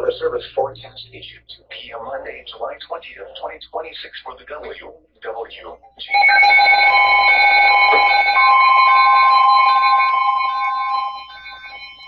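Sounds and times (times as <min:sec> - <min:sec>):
regular beeping: 0:05.8 - 0:12.0
steady alarm tones: 0:06.0 - 0:12.0.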